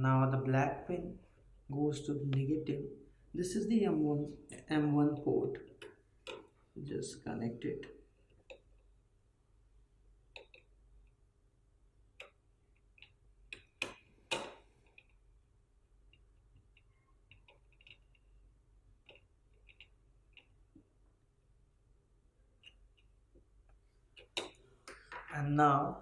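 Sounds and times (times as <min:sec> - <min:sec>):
small clicks and taps of wires: 0:05.6 - 0:06.6, 0:08.3 - 0:08.8, 0:10.3 - 0:10.7, 0:12.2 - 0:15.2, 0:16.1 - 0:18.4, 0:19.0 - 0:20.9, 0:22.6 - 0:25.3.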